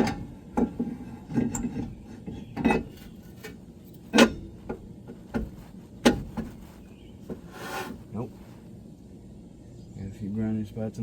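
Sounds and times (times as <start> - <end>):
brake rotor clinking and scraping: 0.0 - 8.5.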